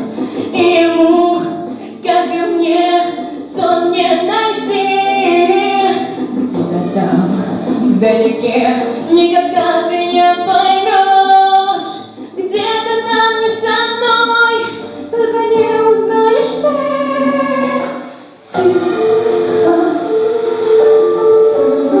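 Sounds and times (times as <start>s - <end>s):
female choir singing sustained notes: 16.4s - 22.0s.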